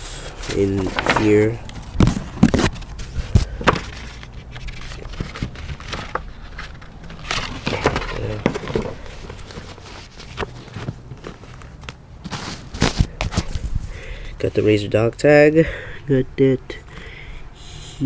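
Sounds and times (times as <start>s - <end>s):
cardboard packaging handled: 0.2s - 13.9s.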